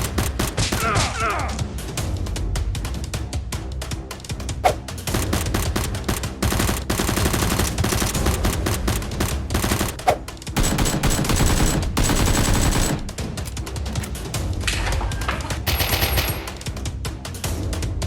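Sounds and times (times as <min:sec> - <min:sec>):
automatic gunfire bursts: 0:05.1 - 0:10.0, 0:10.6 - 0:13.5, 0:15.7 - 0:16.7.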